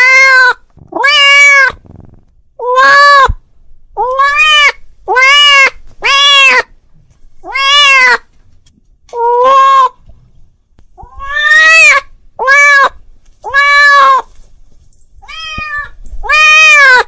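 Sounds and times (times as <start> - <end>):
cat meowing loudly: 0.0 - 3.4, 4.0 - 6.7, 7.4 - 8.3, 9.2 - 10.0, 11.0 - 14.3, 15.2 - 17.0.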